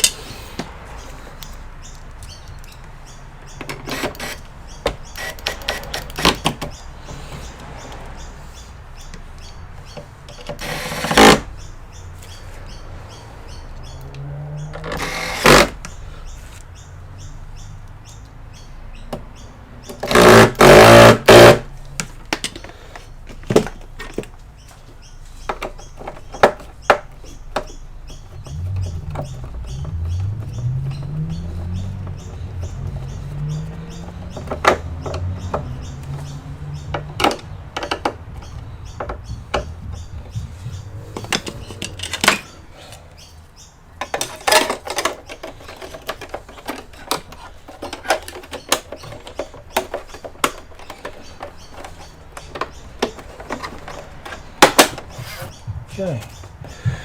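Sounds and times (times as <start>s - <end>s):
plastic and metal parts clicking: 19.9s - 39.7s, 41.1s - 42.6s, 44.0s - 55.5s.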